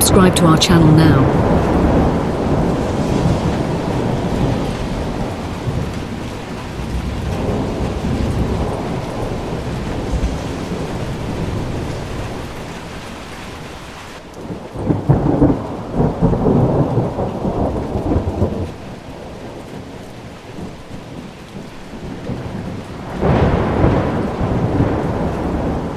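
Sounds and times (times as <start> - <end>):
rain falling: 0.0 - 25.9
thunder rolling: 1.2 - 12.5.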